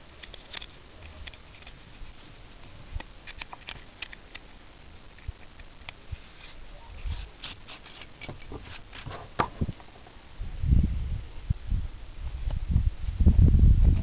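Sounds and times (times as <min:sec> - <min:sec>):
metal mount clicking and scraping: 0:00.2 - 0:01.8.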